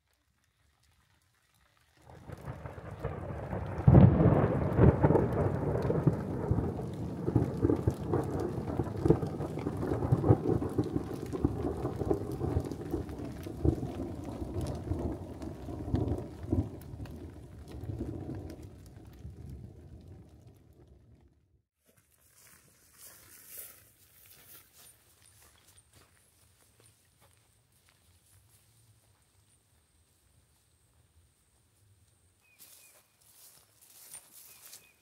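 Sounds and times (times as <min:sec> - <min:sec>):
falling rain: 0:00.0 - 0:21.4
thunder clap: 0:02.1 - 0:21.4
rolling thunder rumble: 0:02.1 - 0:21.5.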